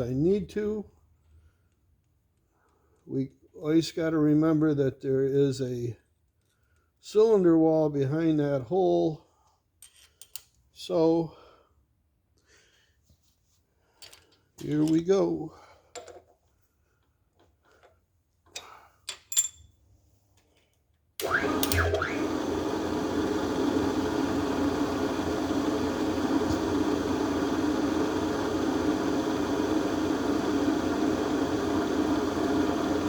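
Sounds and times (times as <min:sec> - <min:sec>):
drill whining and drilling: 0:21.2 - 0:33.0.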